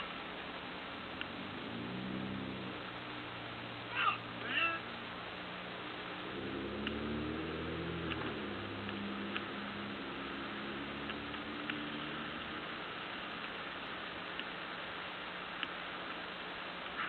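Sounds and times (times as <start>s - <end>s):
engine running: 0.0s - 17.0s
steady hiss: 0.0s - 17.0s
faint clicks: 6.8s - 7.0s, 8.0s - 9.5s, 11.0s - 12.6s, 13.2s - 14.6s, 15.5s - 17.0s.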